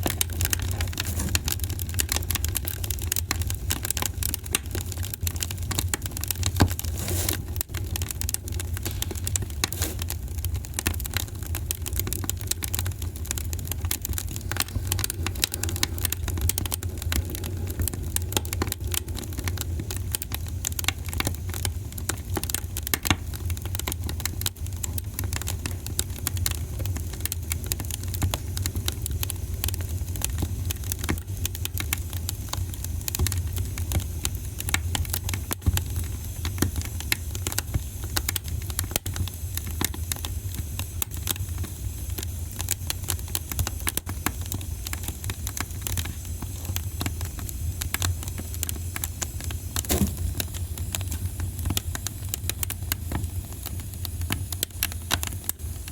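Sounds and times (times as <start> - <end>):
fire crackling and popping: 0.0 - 55.9
low fire rumble: 0.0 - 55.9.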